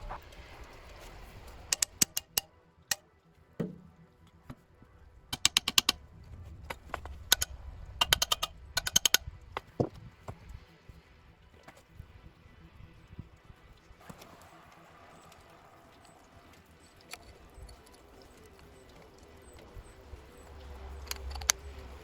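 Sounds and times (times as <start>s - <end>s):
sharp hard clicks and taps: 1.7s - 3.0s, 5.3s - 6.0s, 6.8s - 9.7s.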